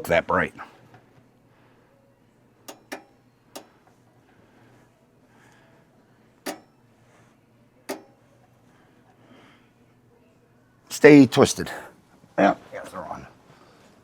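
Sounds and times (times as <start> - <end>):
hands clicking and tapping wiring: 2.6 - 4.0, 6.4 - 6.8, 7.9 - 8.3.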